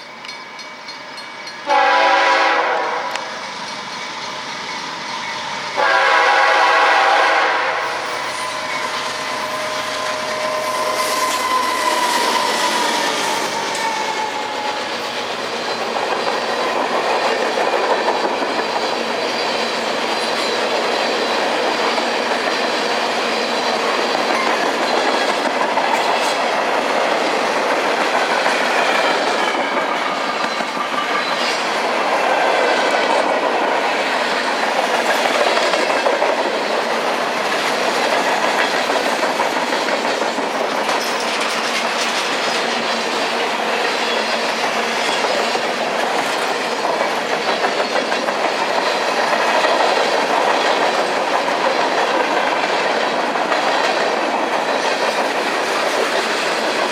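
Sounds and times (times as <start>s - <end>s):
train wheels clacking over rail joints: 0.0s - 56.9s
high wheel squeal: 7.8s - 16.0s.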